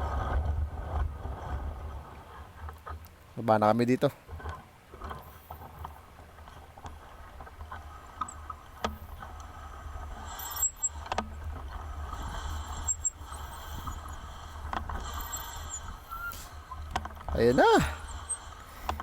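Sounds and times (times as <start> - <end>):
bicycle tyre road noise: 4.3 - 19.0.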